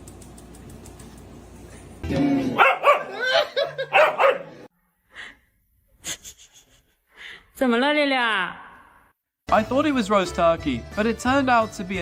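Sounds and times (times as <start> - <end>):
dog barking and yipping: 2.6 - 4.7.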